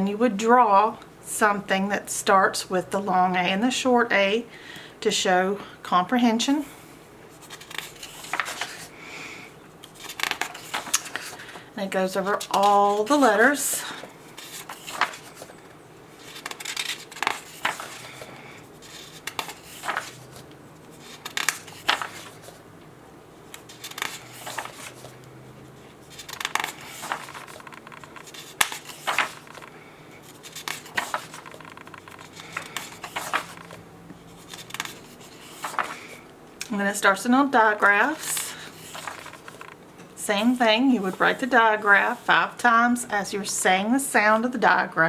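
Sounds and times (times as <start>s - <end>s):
paper pages turning: 7.3s - 9.0s, 9.8s - 22.6s, 23.4s - 36.2s, 37.7s - 42.3s.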